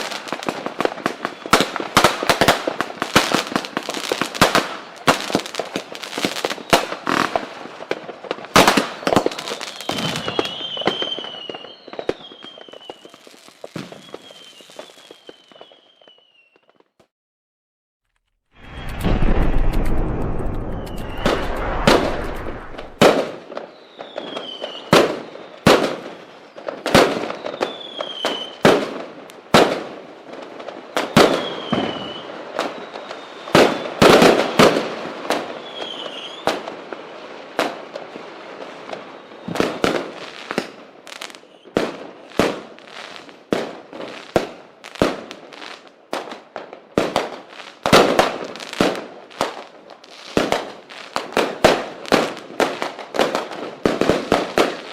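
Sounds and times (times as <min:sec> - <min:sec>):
fireworks bangs and pops: 0:00.0 - 0:17.1, 0:18.6 - 0:54.9
whistling rockets: 0:01.2 - 0:01.8, 0:06.2 - 0:07.3, 0:08.6 - 0:16.9, 0:18.6 - 0:28.8, 0:31.0 - 0:36.6, 0:38.9 - 0:41.8.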